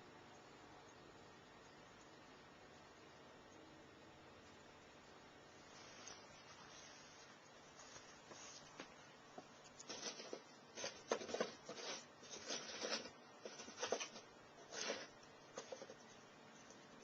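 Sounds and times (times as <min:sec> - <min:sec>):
scratchy rustling and crackling: 0:05.6 - 0:16.2.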